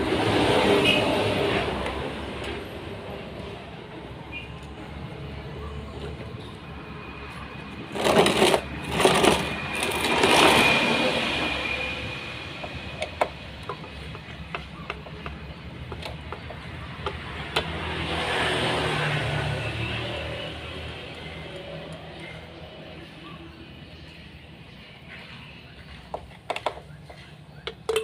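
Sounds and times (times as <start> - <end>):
machine parts knocking and scraping: 7.9 - 10.8.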